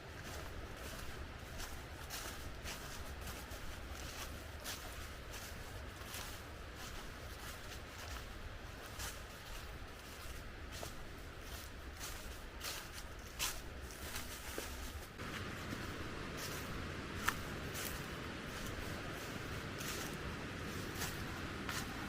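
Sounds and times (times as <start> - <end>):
footsteps crunching on trail: 0.0 - 22.0
steady low rumble: 15.2 - 22.0.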